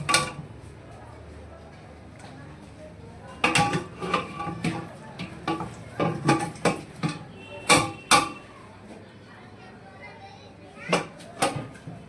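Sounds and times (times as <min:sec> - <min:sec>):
metal ladle clanking against pot: 0:00.0 - 0:00.4, 0:03.4 - 0:08.4.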